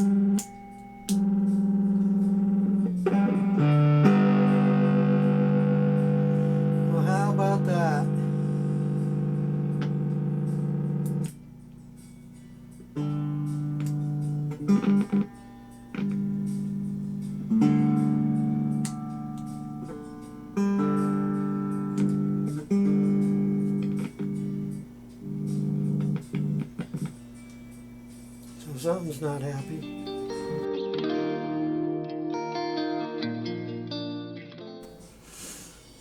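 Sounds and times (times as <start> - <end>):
electric guitar chords ringing: 0.0 - 35.5.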